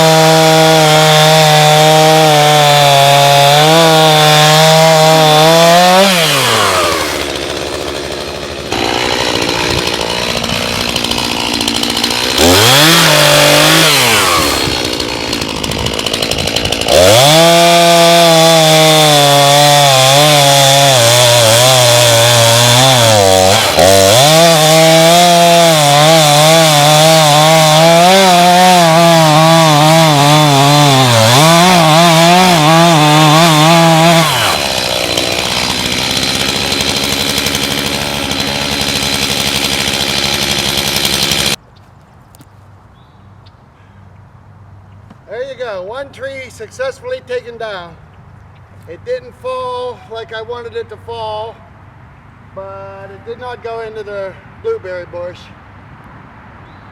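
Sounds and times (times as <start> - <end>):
chainsaw revving and cutting wood: 0.0 - 41.6.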